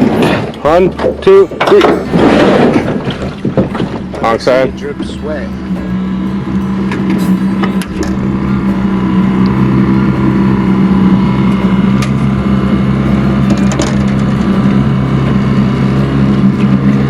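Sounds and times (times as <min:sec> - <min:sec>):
sharp knocks: 0:00.0 - 0:04.3
outboard motor running: 0:00.0 - 0:17.0.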